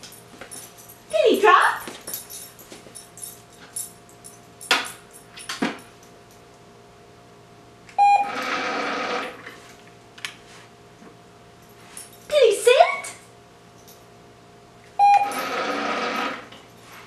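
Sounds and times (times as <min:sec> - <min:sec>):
short electronic beep: 0:08.0 - 0:08.3, 0:15.0 - 0:15.4.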